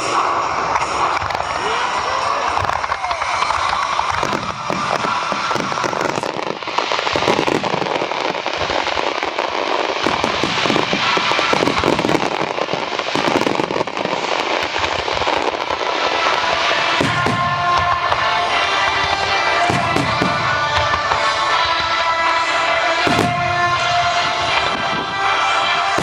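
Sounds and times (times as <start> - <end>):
fireworks bursting: 0.0 - 26.0
music playing: 15.4 - 26.0.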